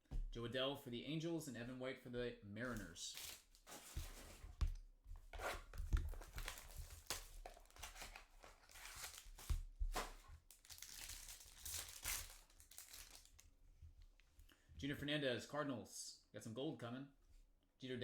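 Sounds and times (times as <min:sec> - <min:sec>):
packaging tearing and crinkling: 0:02.7 - 0:04.2, 0:05.4 - 0:13.4.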